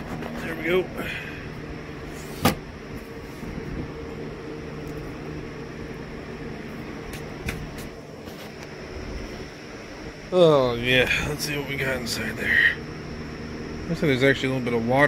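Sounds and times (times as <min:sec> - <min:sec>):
steady background hum: 0:00.0 - 0:15.0
sharp click: 0:07.1 - 0:07.9.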